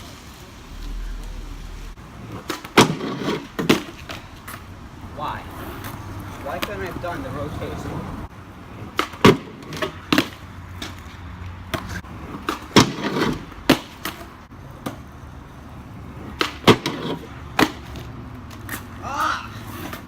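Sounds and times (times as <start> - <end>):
skateboard wheels rumbling: 0.0 - 20.0
skateboard clacking on ground: 2.1 - 4.7, 5.5 - 7.5, 8.6 - 20.0.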